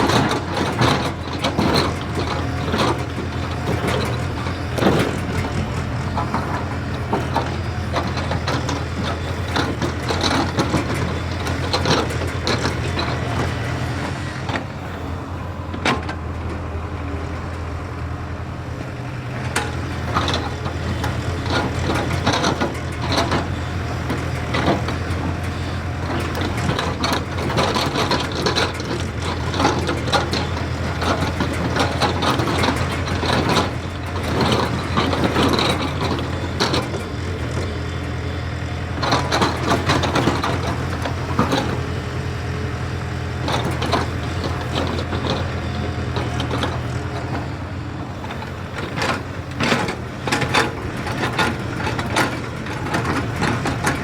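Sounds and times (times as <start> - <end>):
excavator diesel engine running: 0.0 - 54.0
knocks and metallic clatter: 43.4 - 47.6.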